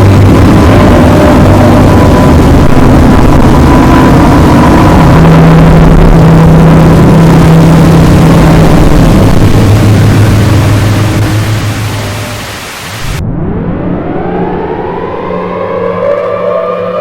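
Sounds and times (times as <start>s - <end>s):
harsh static noise: 0.0s - 13.3s
low droning hums: 0.0s - 17.0s.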